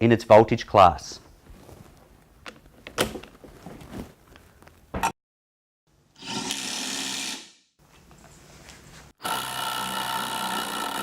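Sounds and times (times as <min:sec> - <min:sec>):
handling clicks and knocks: 0:02.4 - 0:05.1
impact wrench running: 0:06.2 - 0:07.6, 0:09.2 - 0:11.0.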